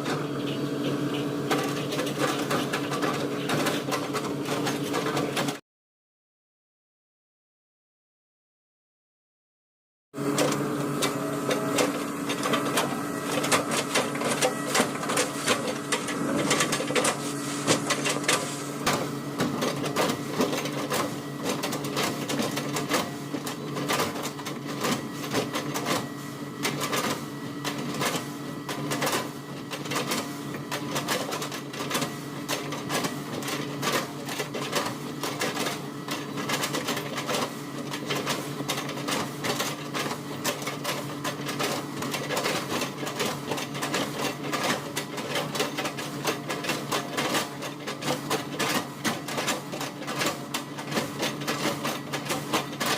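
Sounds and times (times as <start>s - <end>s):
excavator diesel engine running: 0.0s - 5.6s, 10.2s - 34.3s.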